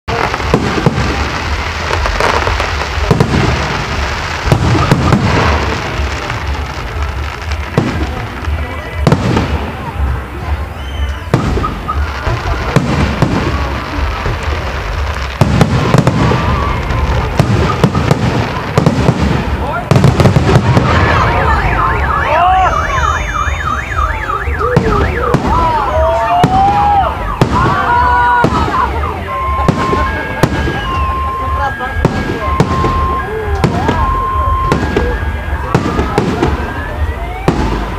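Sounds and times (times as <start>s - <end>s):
sharp firework bangs: 0.1s - 10.2s, 10.8s - 36.7s
continuous rumble: 0.1s - 37.9s
fireworks bursts and crackle: 0.1s - 37.9s
car alarms wailing: 15.8s - 18.8s, 20.0s - 37.9s
gliding alarm tones: 20.8s - 26.2s, 26.9s - 37.9s.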